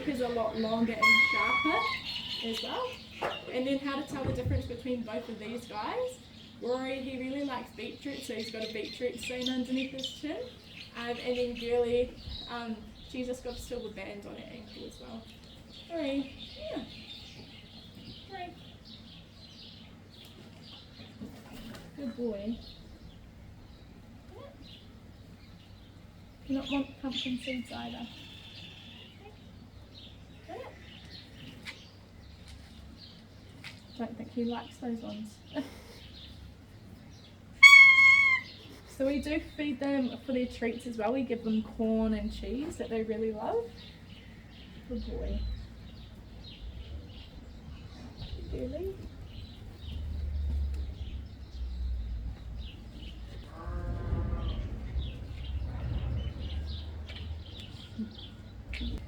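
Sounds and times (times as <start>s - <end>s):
bleat-like animal call: 1.0s - 2.4s, 37.6s - 38.6s
low rumble: 44.8s - 59.0s.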